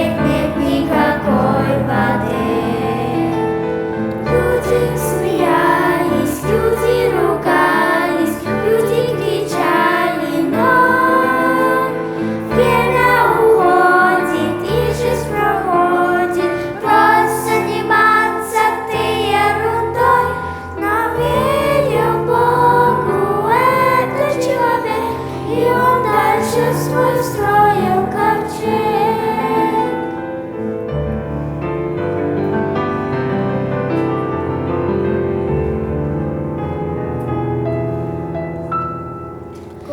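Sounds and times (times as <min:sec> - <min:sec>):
children's choir singing: 0:00.0 - 0:31.1
piano: 0:00.0 - 0:39.9.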